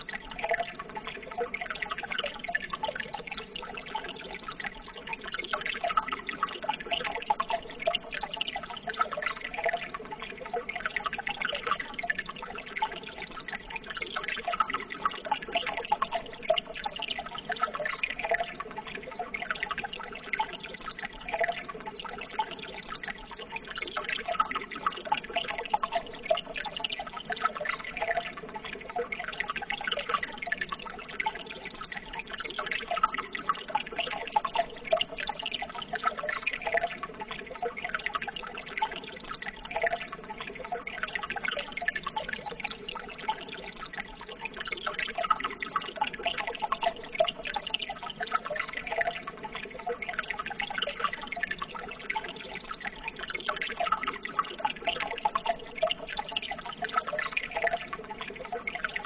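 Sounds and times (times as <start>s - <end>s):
water trickling and splashing: 0.0s - 59.0s.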